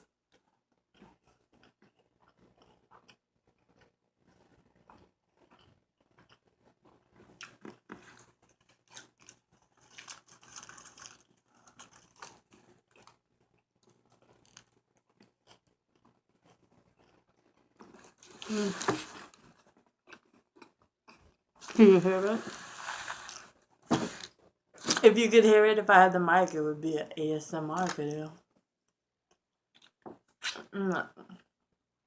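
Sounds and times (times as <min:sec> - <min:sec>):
chewing and biting food: 0:00.3 - 0:21.8.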